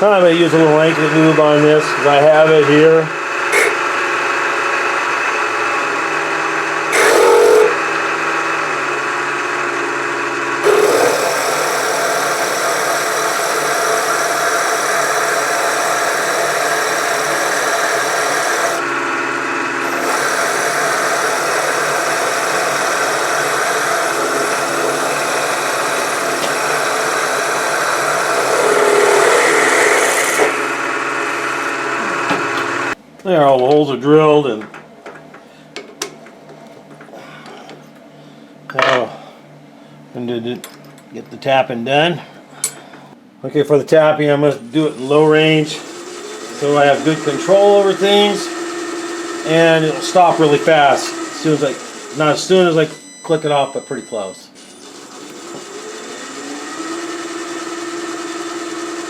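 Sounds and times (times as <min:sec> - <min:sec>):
drill boring into metal: 0:00.0 - 0:33.0, 0:44.7 - 0:59.0
milling machine spindle whine: 0:00.0 - 0:33.0, 0:44.2 - 0:59.0.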